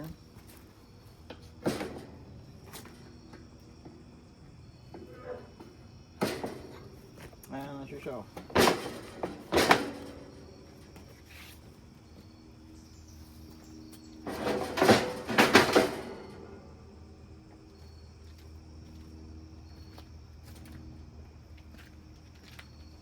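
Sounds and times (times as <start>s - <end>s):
steady low hum: 0.0s - 23.0s
sharp knocks and rattles: 1.2s - 7.3s, 8.2s - 11.2s, 14.0s - 16.9s.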